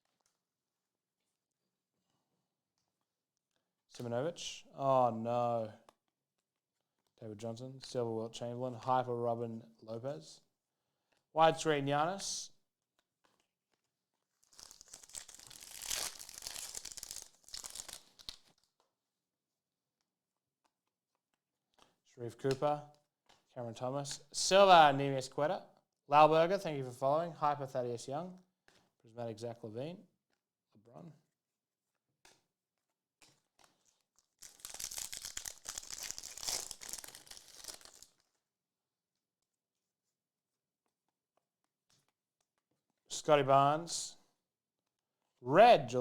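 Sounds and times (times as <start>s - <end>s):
plastic wrapper tearing and crinkling: 13.2s - 18.7s, 33.2s - 38.4s.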